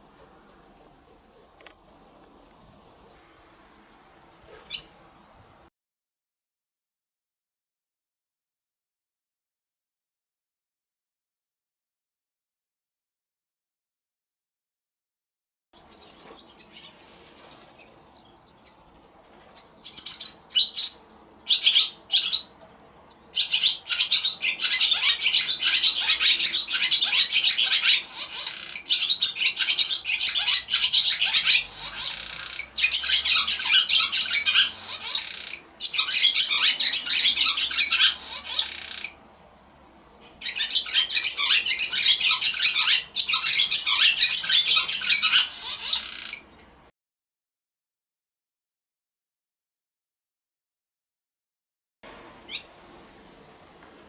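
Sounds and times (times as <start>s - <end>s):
swallows twittering: 2.1s - 5.5s, 15.8s - 39.2s, 40.4s - 46.9s.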